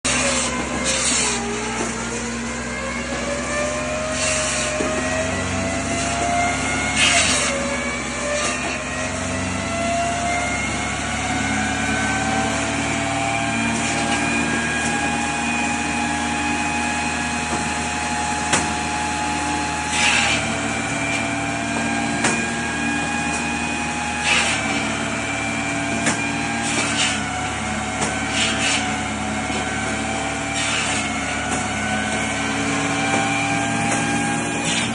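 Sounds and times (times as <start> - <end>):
firewood saw whining: 0.0 - 34.9
blade rasping into wood: 19.9 - 20.5, 24.2 - 24.9, 26.6 - 27.3, 28.0 - 29.0, 30.5 - 31.1, 34.6 - 34.9.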